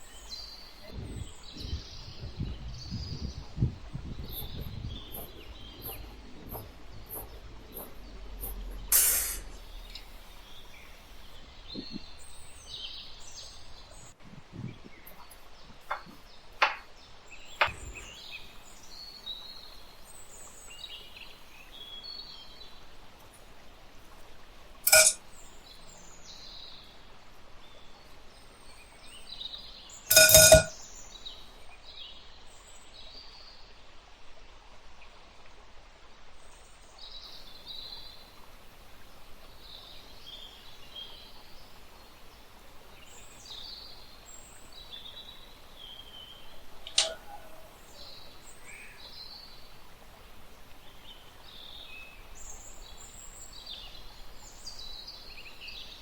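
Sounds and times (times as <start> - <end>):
birds chirping: 0.0 - 22.8, 24.9 - 26.8, 37.3 - 56.0
metal cookware clinking: 24.9 - 25.2, 30.1 - 30.8, 46.9 - 47.6.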